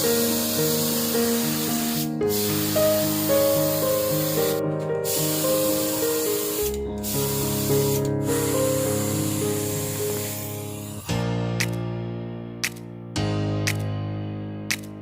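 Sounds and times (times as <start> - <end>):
spray paint hissing: 0.0 - 11.8
background music with melody: 0.0 - 15.0.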